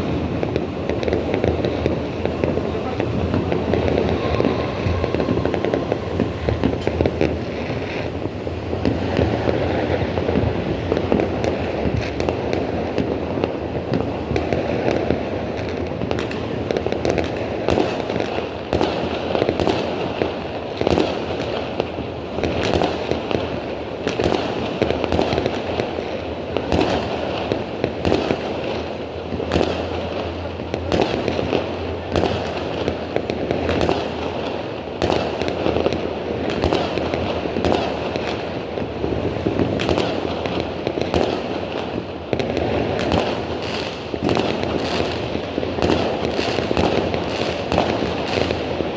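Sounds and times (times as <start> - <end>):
fireworks bangs: 0.0 - 48.9
fireworks crackle: 0.0 - 48.9.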